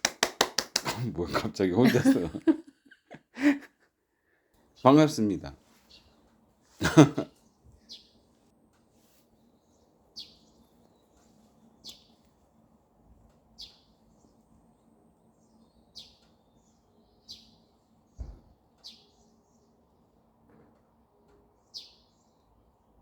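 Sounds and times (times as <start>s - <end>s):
faint low hum: 0.3s - 3.5s
songbirds chirping: 4.3s - 23.0s.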